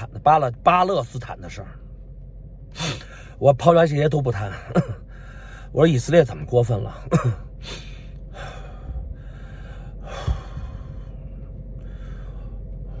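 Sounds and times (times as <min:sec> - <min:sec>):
man breathing into microphone: 0:05.1 - 0:05.7, 0:07.7 - 0:13.0
short low thump: 0:08.6 - 0:09.4, 0:10.1 - 0:11.6.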